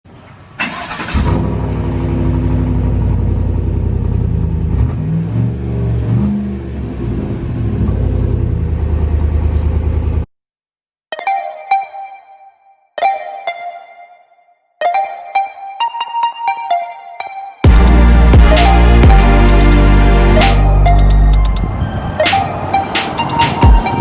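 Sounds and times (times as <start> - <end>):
truck engine revving: 17.6 - 24.0.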